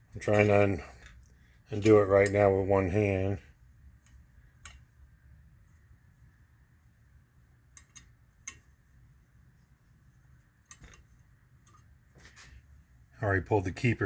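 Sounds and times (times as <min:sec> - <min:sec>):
faint metallic clicks: 0:07.7 - 0:08.7.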